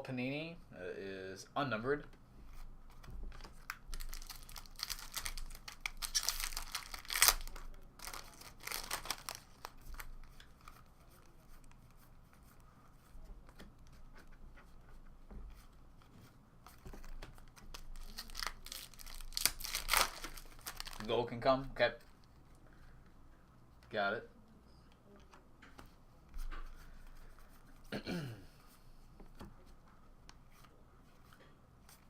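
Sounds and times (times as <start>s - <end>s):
foil wrappers crinkling: 3.7s - 10.1s, 17.8s - 21.2s.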